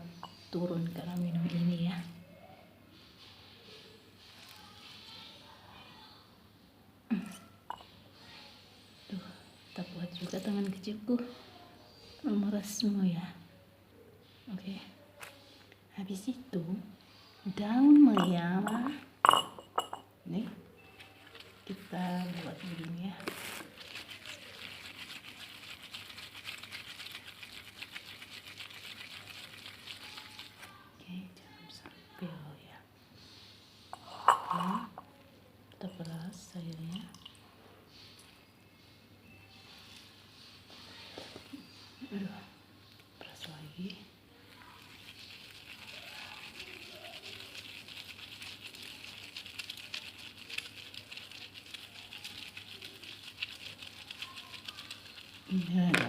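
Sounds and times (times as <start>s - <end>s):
hands crushing leaves: 21.2s - 30.7s, 44.8s - 56.0s
leaves crushed between hands: 21.3s - 25.6s.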